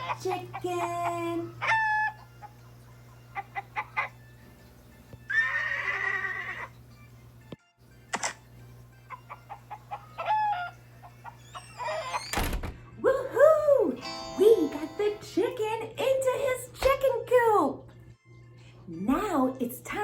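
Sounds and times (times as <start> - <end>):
chicken clucking: 9.1 - 12.0.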